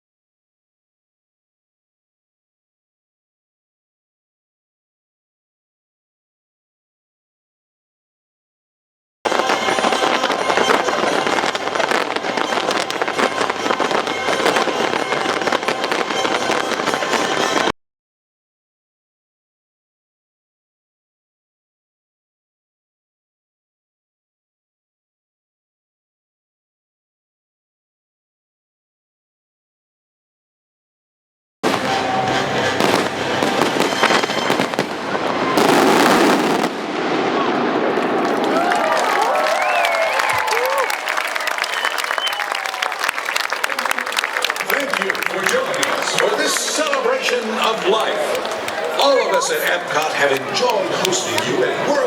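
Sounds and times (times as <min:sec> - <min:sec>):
fireworks bursting and crackling: 0:09.3 - 0:17.7, 0:31.6 - 0:52.0.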